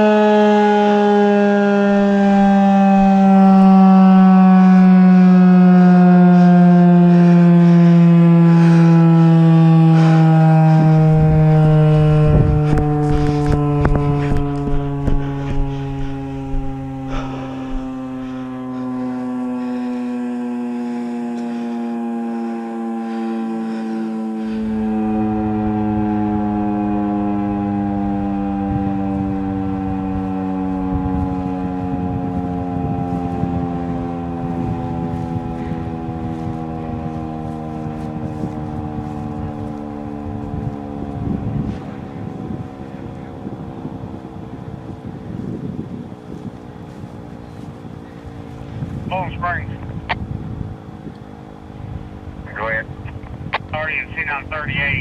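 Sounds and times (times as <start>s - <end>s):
outdoor warning siren: 0.0s - 55.0s
low rumble: 11.0s - 18.6s.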